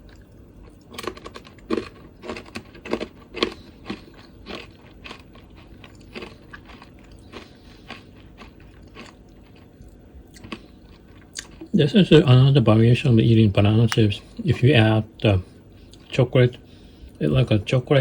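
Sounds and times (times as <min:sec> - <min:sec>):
crunchy chewing: 0:00.0 - 0:12.3.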